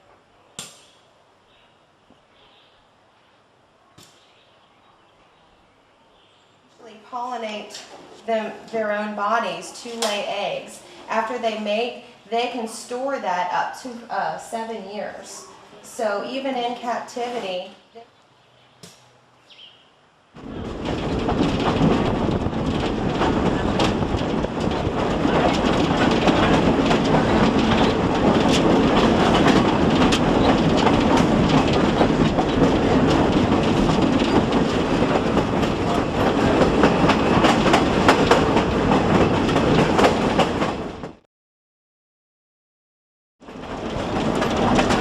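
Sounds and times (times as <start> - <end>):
train rumbling along track: 6.8 - 17.4, 20.4 - 41.2, 43.4 - 45.0
wheels clicking over rail joints: 20.4 - 41.2, 43.4 - 45.0.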